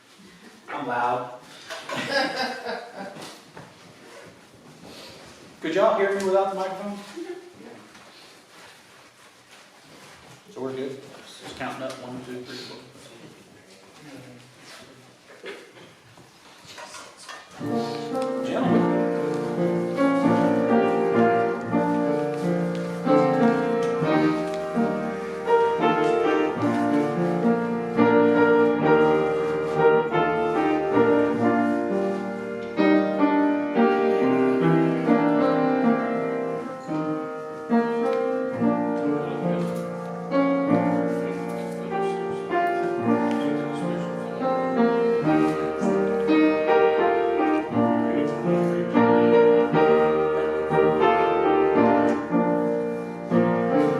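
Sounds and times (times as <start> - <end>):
piano music: 17.6 - 53.9.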